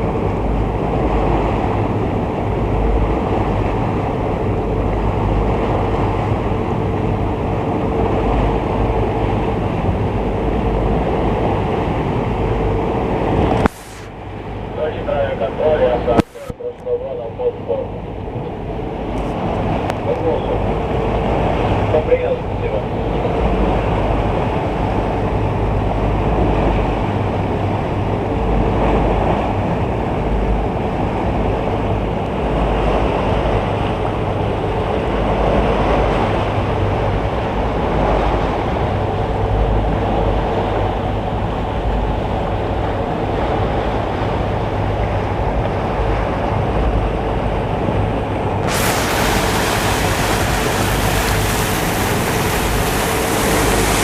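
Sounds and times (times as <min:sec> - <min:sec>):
sea water rushing: 0:00.0 - 0:54.0
wind on microphone: 0:22.8 - 0:54.0.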